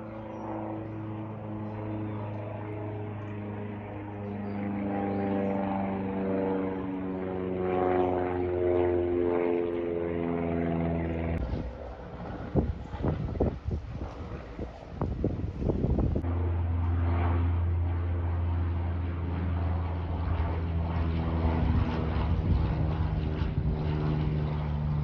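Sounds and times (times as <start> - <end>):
propeller aircraft engine: 0.0 - 25.0
wind noise on microphone: 11.4 - 16.3, 21.4 - 25.0.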